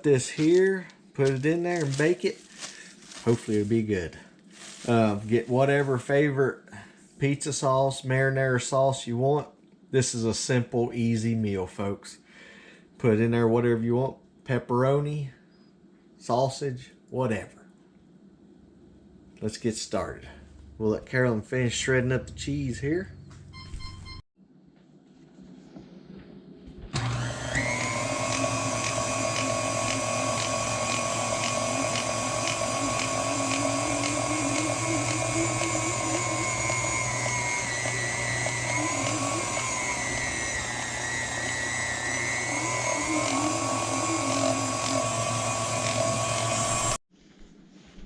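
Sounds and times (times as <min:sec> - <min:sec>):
electric food shredder motor: 0:27.0 - 0:47.0.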